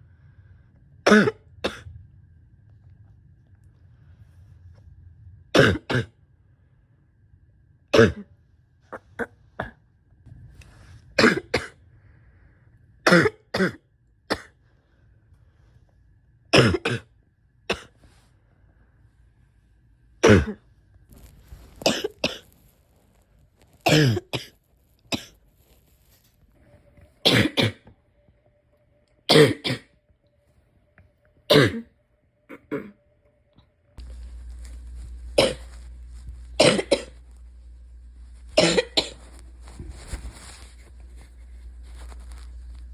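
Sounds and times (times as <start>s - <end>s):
person coughing: 1.1s - 1.9s, 5.6s - 6.1s, 7.9s - 8.3s, 11.2s - 11.8s, 13.1s - 14.5s, 16.6s - 17.1s, 20.2s - 20.6s, 21.9s - 22.4s, 23.9s - 24.5s, 27.2s - 27.9s, 29.3s - 30.0s, 31.5s - 31.9s, 32.5s - 33.0s, 35.4s - 35.8s, 36.6s - 37.2s, 38.6s - 39.3s.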